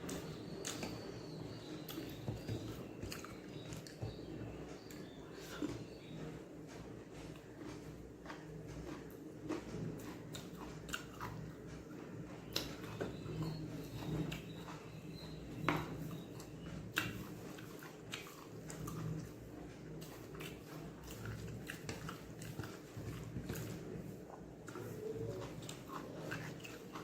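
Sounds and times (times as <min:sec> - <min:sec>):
person chewing food: 0:00.0 - 0:27.0.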